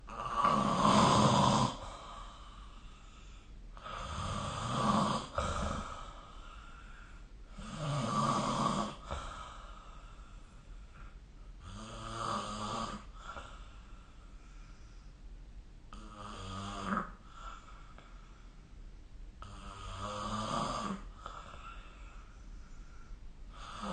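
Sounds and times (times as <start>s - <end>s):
quiet breathing: 0.0s - 23.9s
person snoring: 0.1s - 2.4s, 3.8s - 6.9s, 7.5s - 9.6s, 11.6s - 13.6s, 15.9s - 17.7s, 19.4s - 22.2s, 23.5s - 23.9s.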